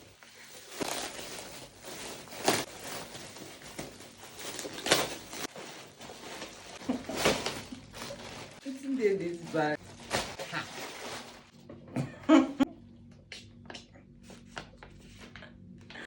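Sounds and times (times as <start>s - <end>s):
packaging rustling: 0.0s - 11.5s.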